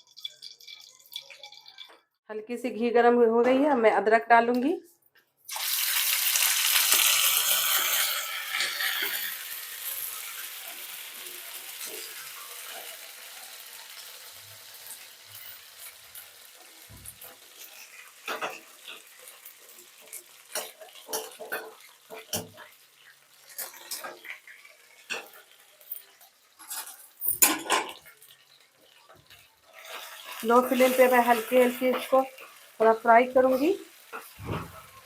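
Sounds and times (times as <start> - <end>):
paste sizzling in hot ghee: 5.5 - 27.2, 27.9 - 35.0.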